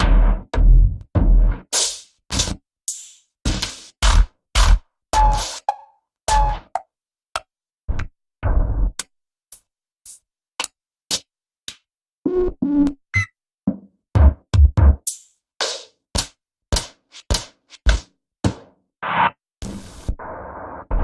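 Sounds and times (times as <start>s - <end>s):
deep kick drums: 14.2s - 15.0s
drum machine hits: 14.2s - 18.7s.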